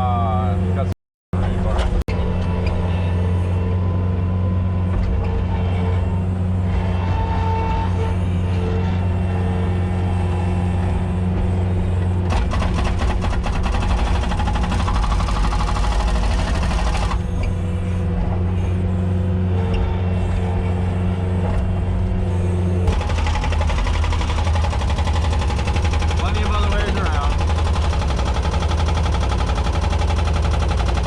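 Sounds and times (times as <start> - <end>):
vehicle engine running: 0.0 - 31.0
rapid rattling: 12.3 - 17.2, 22.9 - 31.0.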